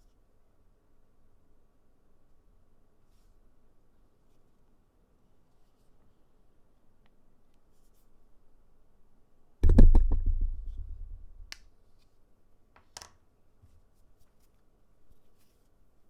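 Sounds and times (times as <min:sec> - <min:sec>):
heavy thump: 0:09.6 - 0:11.4.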